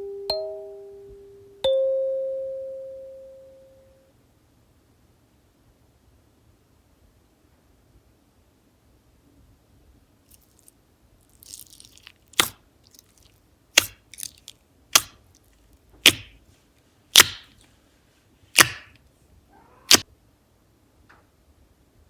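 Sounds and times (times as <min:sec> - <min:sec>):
slime squeezed by hand: 0:10.3 - 0:10.7, 0:11.3 - 0:16.4, 0:18.6 - 0:18.9
sharp air pops from slime: 0:11.4 - 0:13.2, 0:13.8 - 0:15.2, 0:16.0 - 0:16.4, 0:17.2 - 0:17.6, 0:18.6 - 0:18.9.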